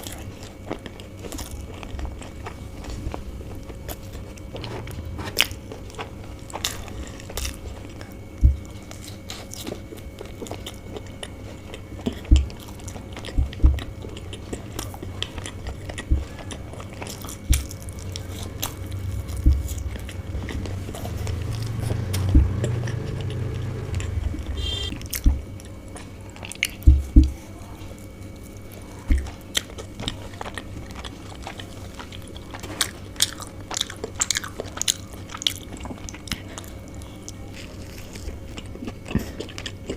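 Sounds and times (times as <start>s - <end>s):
wet chewing and biting: 0.0s - 39.9s
sharp low thumps: 19.0s - 25.5s.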